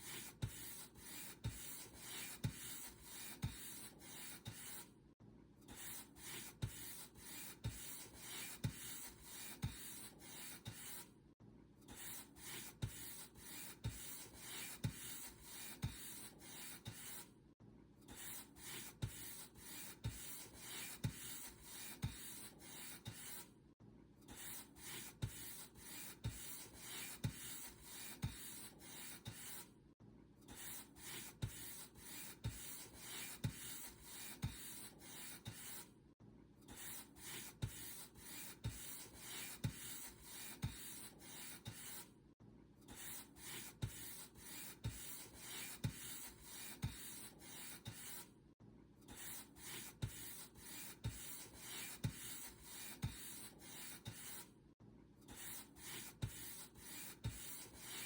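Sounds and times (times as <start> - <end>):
paint brush stroking a surface: 0.0 - 4.8, 5.8 - 11.1, 12.0 - 17.3, 18.2 - 23.5, 24.4 - 29.7, 30.6 - 35.9, 36.8 - 42.1, 42.9 - 48.3, 49.2 - 54.5, 55.3 - 58.0.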